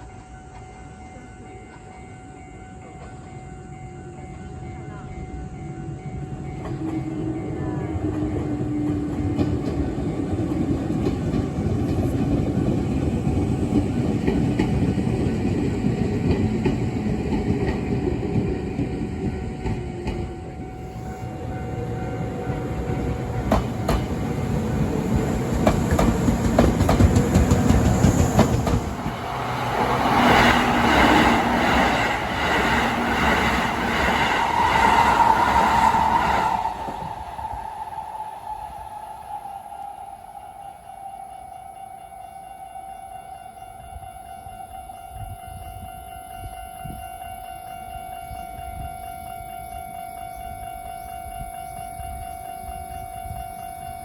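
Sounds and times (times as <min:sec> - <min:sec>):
crossing warning bell ringing: 0:00.0 - 0:08.6, 0:19.1 - 0:54.0
electric train passing: 0:00.0 - 0:54.0
wheels clacking over rail joints: 0:21.6 - 0:37.2.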